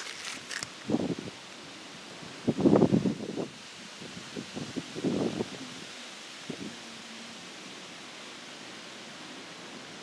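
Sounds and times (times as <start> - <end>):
dry leaves rustling and crunching: 0.0 - 0.9.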